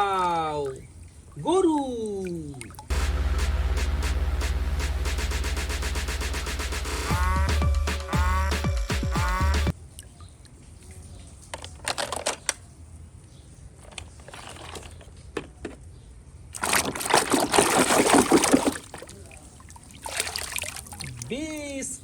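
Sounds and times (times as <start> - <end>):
water splashing and trickling: 0.0 - 6.3, 9.7 - 11.9, 16.5 - 21.8
water pouring: 16.6 - 21.4.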